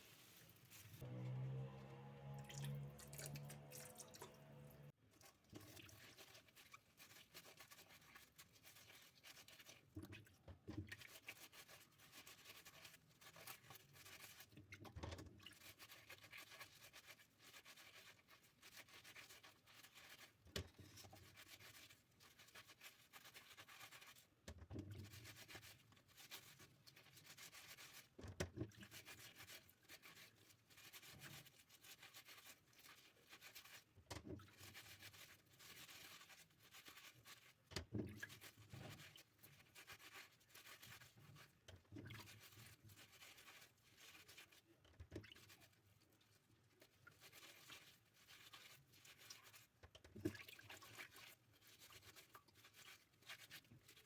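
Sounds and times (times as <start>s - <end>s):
items rubbing and scratching: 0.0s - 1.1s.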